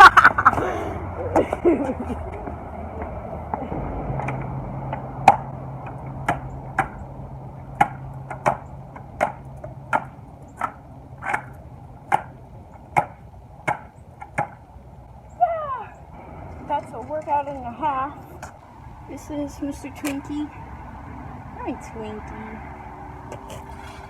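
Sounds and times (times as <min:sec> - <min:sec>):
low rolling hum: 0:00.0 - 0:24.0
skateboard wheels clacking: 0:01.3 - 0:14.7.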